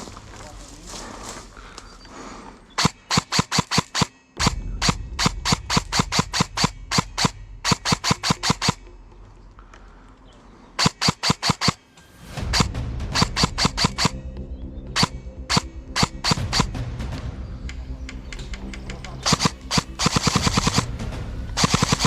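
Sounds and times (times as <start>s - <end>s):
airsoft gun firing bursts: 2.8s - 8.8s, 10.8s - 11.8s, 12.5s - 14.2s, 15.0s - 16.8s, 19.2s - 20.9s, 21.6s - 22.0s.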